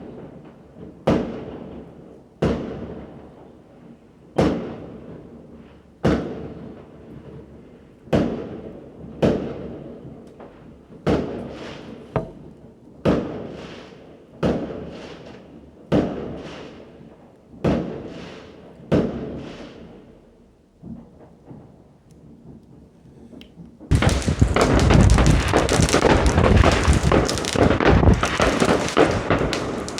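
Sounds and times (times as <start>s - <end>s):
fireworks bangs with echo: 8.1s - 20.2s, 23.8s - 29.9s.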